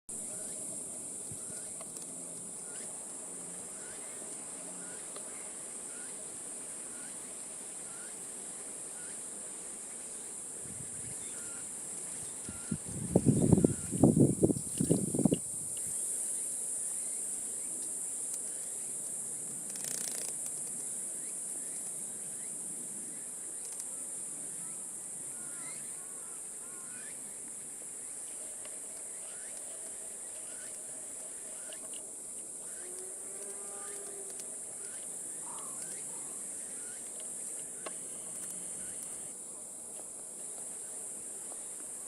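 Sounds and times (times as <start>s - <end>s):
faint chirps: 0.1s - 9.3s, 9.9s - 18.9s, 28.0s - 39.4s
insects singing drone: 0.1s - 42.0s.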